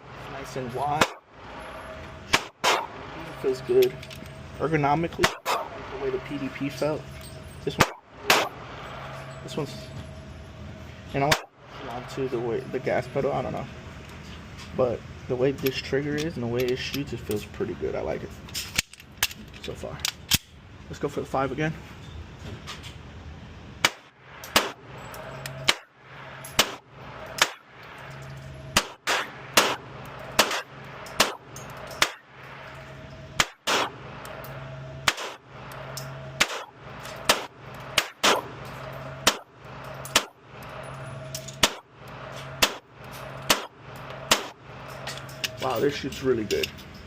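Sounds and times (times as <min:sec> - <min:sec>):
low steady hum: 0:00.0 - 0:47.0
pistol shots: 0:00.9 - 0:01.2, 0:02.3 - 0:03.0, 0:05.2 - 0:05.7, 0:07.8 - 0:08.6, 0:11.3 - 0:11.5, 0:23.8 - 0:24.8, 0:25.6 - 0:25.9, 0:26.6 - 0:26.8, 0:27.4 - 0:27.6, 0:28.7 - 0:32.3, 0:33.4 - 0:34.0, 0:35.0 - 0:35.4, 0:36.4 - 0:38.6, 0:39.2 - 0:39.5, 0:40.1 - 0:40.4, 0:41.6 - 0:41.9, 0:42.5 - 0:44.6.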